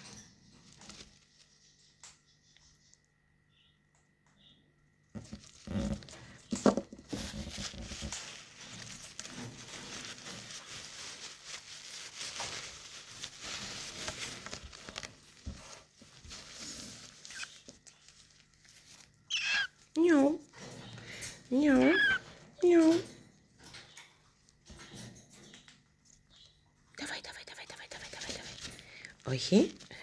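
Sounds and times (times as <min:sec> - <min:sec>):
bird chick begging noises: 0:19.3 - 0:19.7, 0:21.7 - 0:22.2
bird chick chirp: 0:19.3 - 0:19.7.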